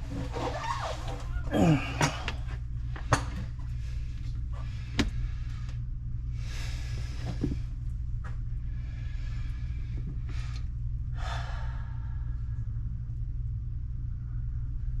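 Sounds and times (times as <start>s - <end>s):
steady low rumble: 1.1s - 15.0s
person breathing out heavily: 11.2s - 12.5s.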